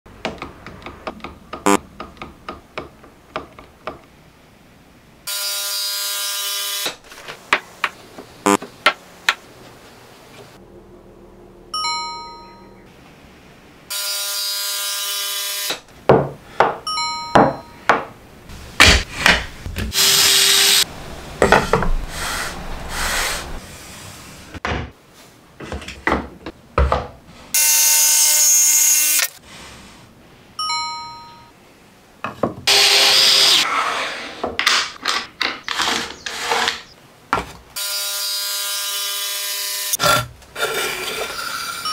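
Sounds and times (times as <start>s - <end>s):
falling-tone chime: 11.7s - 12.9s
jigsaw cutting wood: 32.7s - 33.6s.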